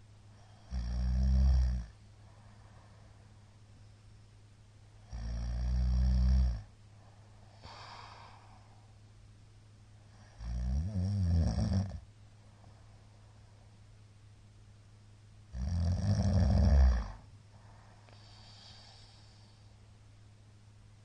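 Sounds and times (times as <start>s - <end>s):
man snoring loudly: 0.6s - 1.9s, 5.1s - 6.7s, 10.2s - 12.0s, 15.5s - 17.2s
soft breath: 2.0s - 4.2s, 6.9s - 9.0s, 12.2s - 14.0s, 17.1s - 19.8s.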